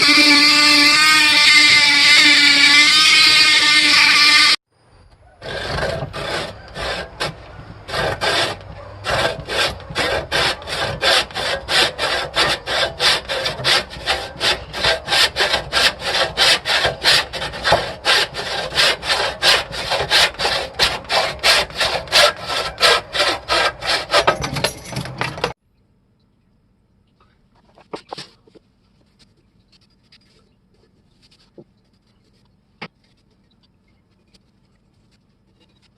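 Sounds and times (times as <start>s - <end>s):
hand tool rasping strokes: 0.0s - 4.6s, 5.4s - 25.6s.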